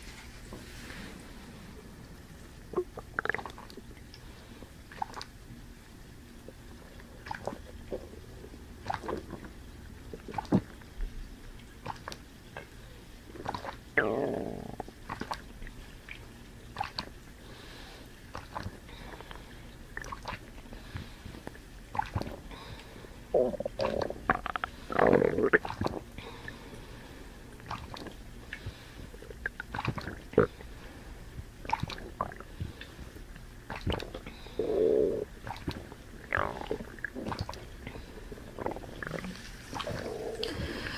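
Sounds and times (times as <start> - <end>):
loud burp: 14.0 - 14.8, 23.3 - 25.7.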